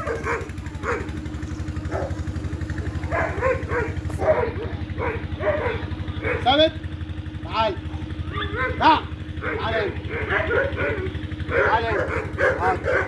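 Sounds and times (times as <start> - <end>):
engine idling: 0.0 - 13.0
dog whining and yelping: 9.4 - 13.0.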